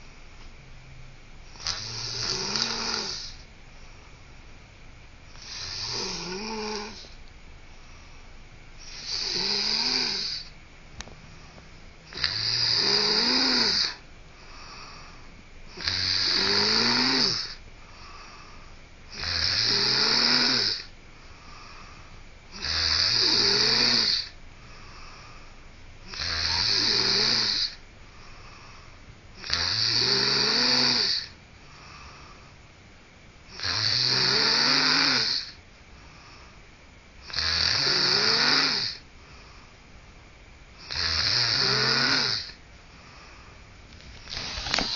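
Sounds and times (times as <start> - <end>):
person snoring: 1.5 - 3.4, 5.3 - 7.2, 8.8 - 10.5, 12.0 - 18.5, 19.1 - 25.4, 26.0 - 28.8, 29.4 - 32.5, 33.5 - 35.6, 37.2 - 39.0, 40.8 - 43.5, 44.2 - 44.9.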